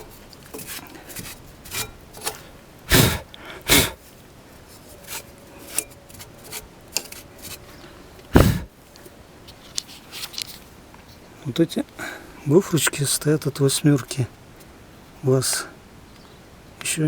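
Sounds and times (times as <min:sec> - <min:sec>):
light rubbing: 0:00.0 - 0:08.7.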